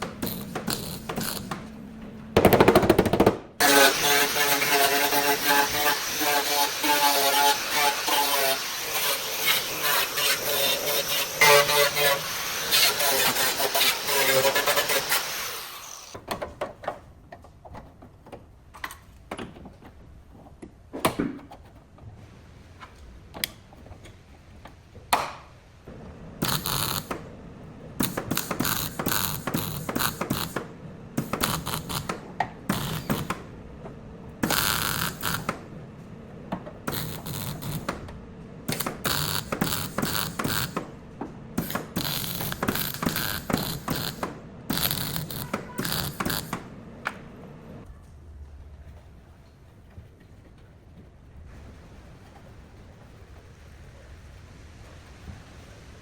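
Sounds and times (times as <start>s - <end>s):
hand tools clicking and knocking: 28.0s - 33.5s, 36.5s - 47.2s.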